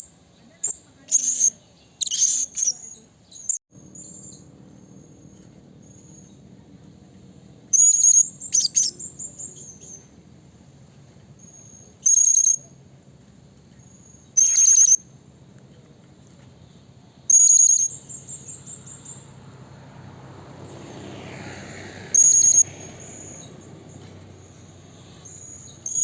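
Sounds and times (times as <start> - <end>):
parrot shrill squeaky calls: 1.1 - 2.9, 14.4 - 15.0, 22.1 - 22.7.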